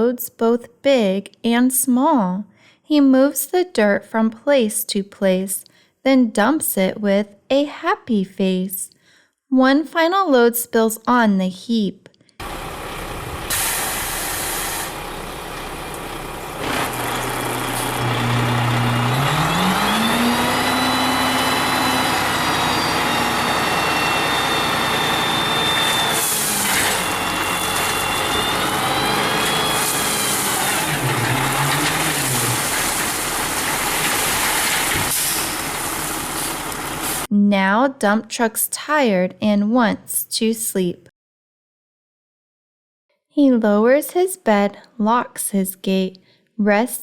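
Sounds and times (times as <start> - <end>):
dump truck engine revving: 12.4 - 37.3.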